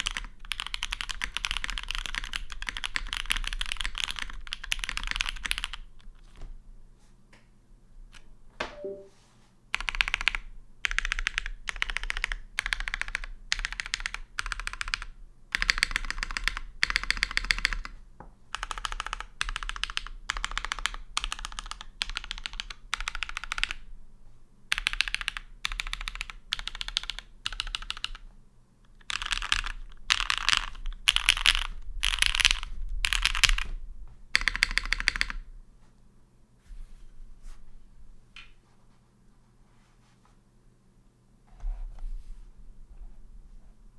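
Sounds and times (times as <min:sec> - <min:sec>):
mechanical keyboard typing: 0:00.0 - 0:06.0, 0:09.8 - 0:17.9, 0:18.5 - 0:23.8, 0:24.7 - 0:28.2, 0:28.9 - 0:33.7, 0:34.4 - 0:35.4.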